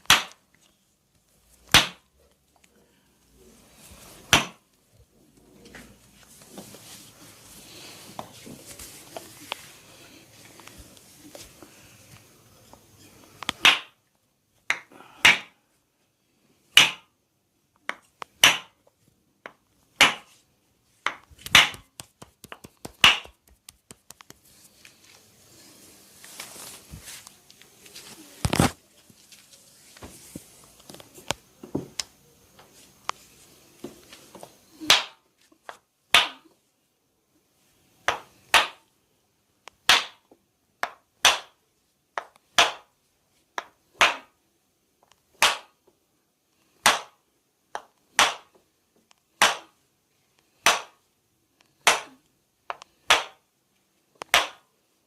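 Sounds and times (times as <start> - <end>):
hands slapping body: 0.0 - 0.4, 1.7 - 2.0, 4.2 - 4.6, 13.4 - 14.0, 14.7 - 15.6, 16.8 - 17.1, 17.9 - 18.8, 19.5 - 20.4, 21.0 - 24.5, 34.8 - 35.2, 36.1 - 36.5, 39.8 - 40.2, 40.8 - 41.6, 42.2 - 42.9, 43.6 - 44.3, 45.4 - 45.8, 46.8 - 47.2, 47.8 - 48.5, 49.4 - 49.7, 50.6 - 51.0, 51.8 - 53.4, 54.2 - 54.7
hands rubbing skin: 21.4 - 25.2.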